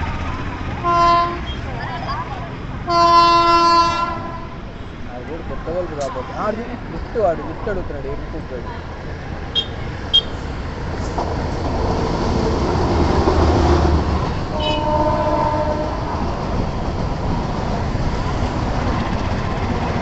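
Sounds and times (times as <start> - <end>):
train rumbling past: 0.0 - 20.0
train horn two-tone blast: 0.8 - 1.6, 2.9 - 4.6, 14.5 - 16.1.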